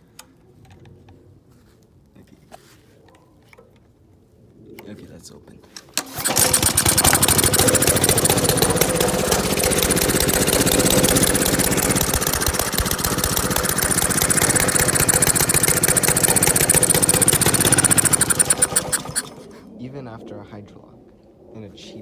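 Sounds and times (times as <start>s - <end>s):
small engine running: 6.0s - 19.6s.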